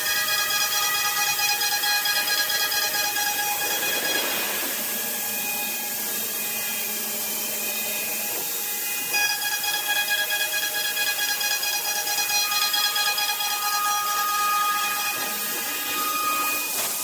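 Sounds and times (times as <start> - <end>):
router cutting wood: 0.0 - 17.0.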